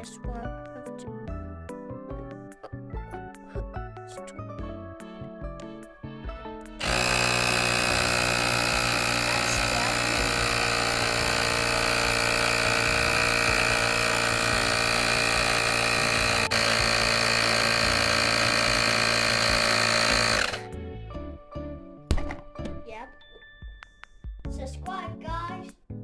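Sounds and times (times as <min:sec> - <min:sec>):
electric air compressor running: 0:06.8 - 0:20.7.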